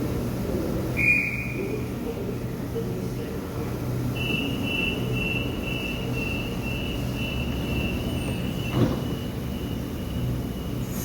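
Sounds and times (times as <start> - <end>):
train humming: 0.0 - 11.0
door warning beeps: 4.2 - 9.9
doors shutting thump: 8.6 - 9.2.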